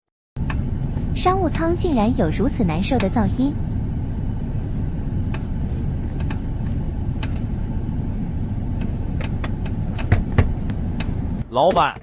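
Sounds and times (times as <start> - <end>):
road rumble in cabin: 0.4 - 12.0
car door knocking: 9.2 - 11.1.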